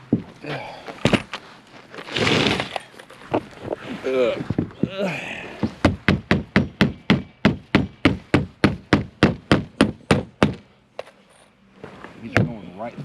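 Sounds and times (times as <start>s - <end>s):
hammer driving nails into wood: 5.6s - 10.7s.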